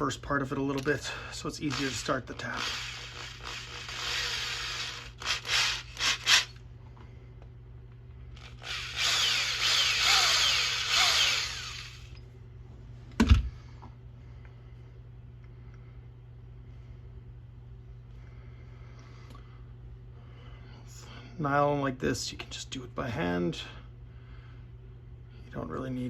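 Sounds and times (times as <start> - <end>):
power drill running: 1.6 - 6.6, 8.4 - 12.2.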